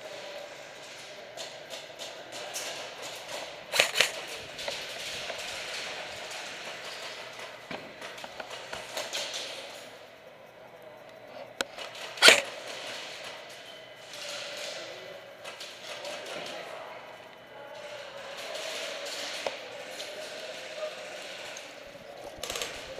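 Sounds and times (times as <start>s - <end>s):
rustling movement: 0.5s - 10.1s
sharp cracks: 1.7s - 9.9s, 11.7s - 13.5s.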